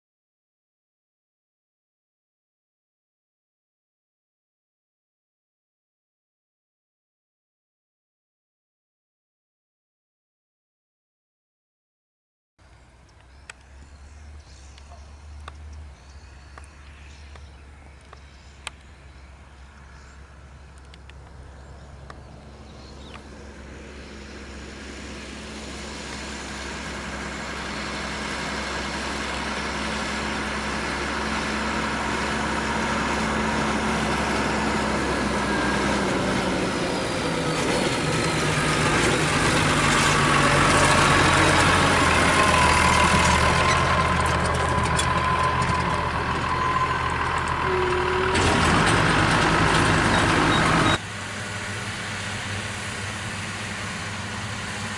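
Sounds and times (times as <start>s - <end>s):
tractor engine running: 12.8s - 54.9s
baler working: 22.0s - 54.9s.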